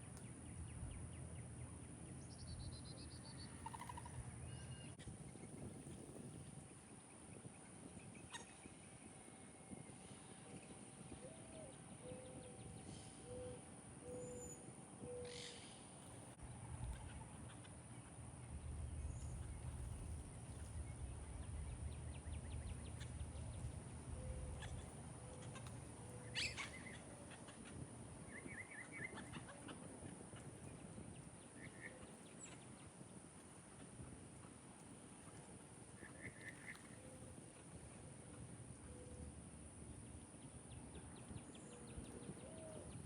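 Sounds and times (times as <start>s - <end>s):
low rumble: 16.4s - 24.9s
birds chirping: 16.4s - 29.5s.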